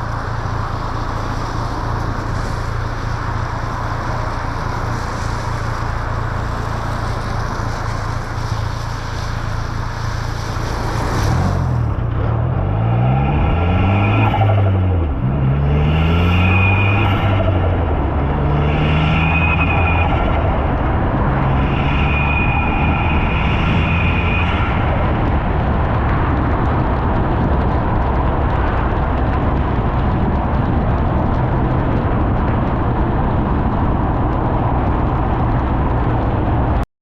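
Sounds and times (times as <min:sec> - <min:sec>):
road noise: 0:00.0 - 0:36.9
car engine accelerating: 0:09.6 - 0:36.8.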